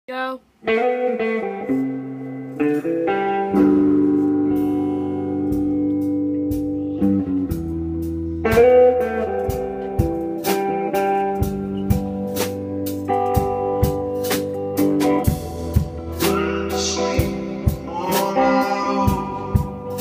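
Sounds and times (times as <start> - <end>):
electric guitar chords: 0.1 - 20.0.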